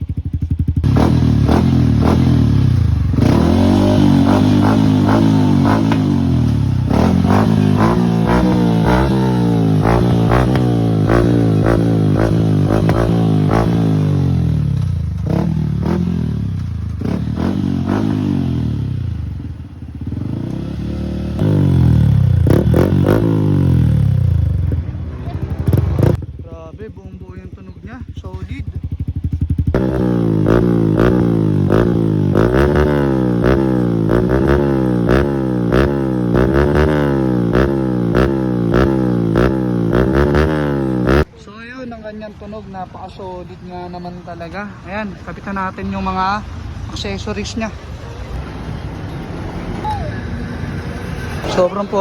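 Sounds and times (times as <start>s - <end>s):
motorcycle engine revving: 0.0s - 41.4s.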